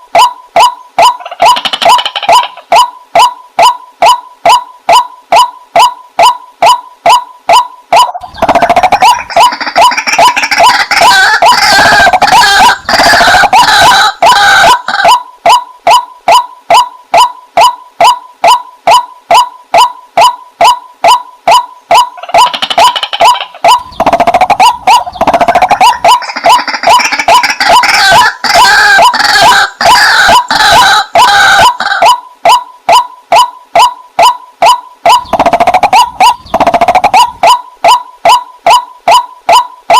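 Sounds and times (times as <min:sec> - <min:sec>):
bird repeated wak calls: 0:00.0 - 0:39.9
harsh bird chattering chorus: 0:22.2 - 0:27.8, 0:35.2 - 0:37.3.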